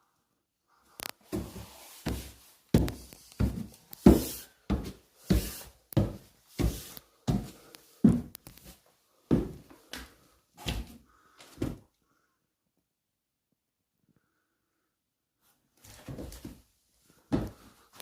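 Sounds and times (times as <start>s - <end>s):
footsteps on wooden stairs: 1.3s - 8.7s, 9.3s - 11.0s.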